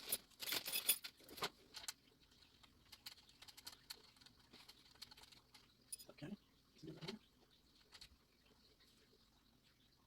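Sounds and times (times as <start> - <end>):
small hard parts clinking: 0.0 - 2.0.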